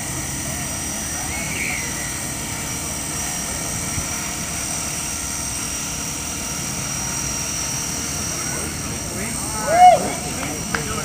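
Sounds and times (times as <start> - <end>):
rc helicopter motor whine: 0.0 - 11.0
rotor wash: 0.0 - 11.0.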